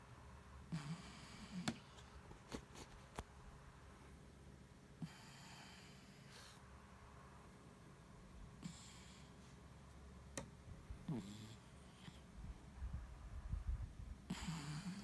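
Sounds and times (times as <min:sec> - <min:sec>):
pet snoring softly: 0:00.6 - 0:02.0, 0:05.0 - 0:06.6, 0:08.6 - 0:09.5, 0:11.0 - 0:12.3, 0:14.2 - 0:15.0.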